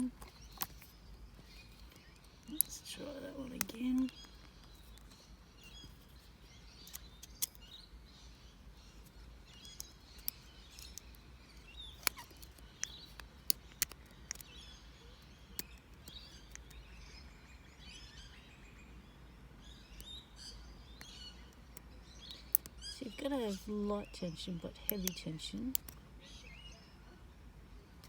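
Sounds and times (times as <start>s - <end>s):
birds chirping: 0.0s - 28.0s
lock pick metallic clicks: 6.8s - 7.8s, 9.5s - 11.2s, 11.8s - 14.8s, 21.0s - 22.8s.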